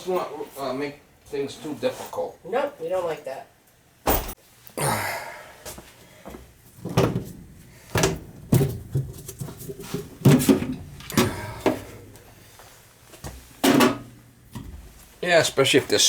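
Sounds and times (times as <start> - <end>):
sheet metal knocks and rattles: 6.8 - 12.0, 13.6 - 14.8.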